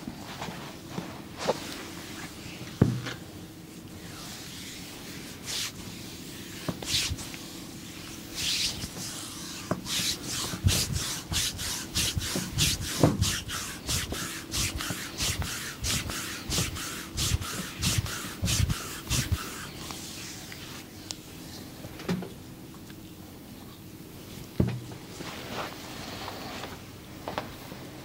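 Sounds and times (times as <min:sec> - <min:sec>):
hands scratching and rubbing: 0:03.8 - 0:20.9.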